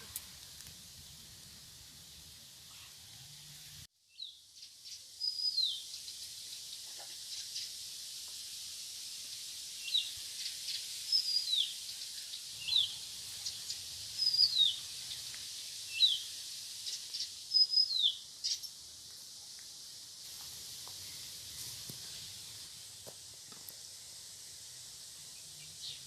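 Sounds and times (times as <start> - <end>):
steady outdoor hiss: 0.0 - 26.0
songbird calling: 4.1 - 7.8, 9.8 - 18.8.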